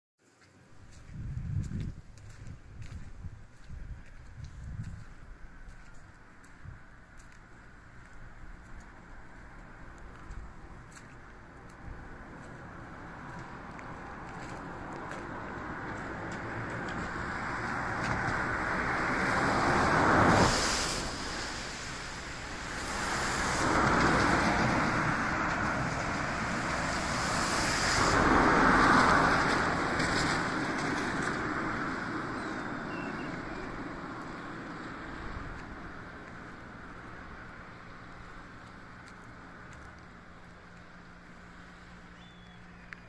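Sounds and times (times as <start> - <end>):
vehicles passing on wet road: 0.9 - 43.0
steady wet background hiss: 18.6 - 42.3.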